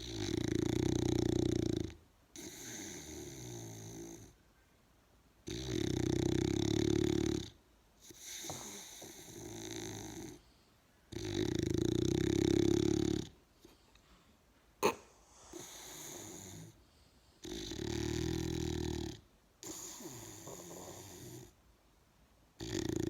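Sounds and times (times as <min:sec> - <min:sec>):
large animal snoring: 0:00.0 - 0:04.4, 0:05.4 - 0:10.4, 0:11.1 - 0:13.4, 0:14.8 - 0:16.8, 0:17.4 - 0:21.6, 0:22.6 - 0:23.0.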